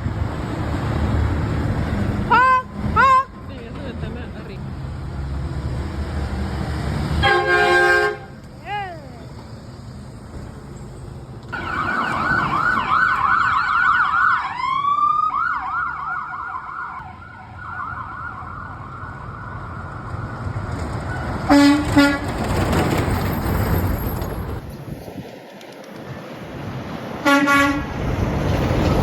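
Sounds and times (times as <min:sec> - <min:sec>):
vehicle rumble passing by: 0:00.0 - 0:29.0
air horn blasts: 0:02.3 - 0:03.4, 0:07.2 - 0:08.4, 0:21.5 - 0:22.2, 0:27.2 - 0:27.9
emergency siren yelping: 0:11.5 - 0:20.5.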